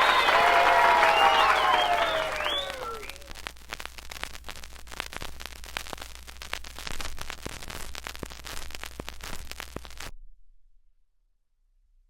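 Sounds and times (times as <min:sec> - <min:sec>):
crowd applause: 0:00.0 - 0:03.4.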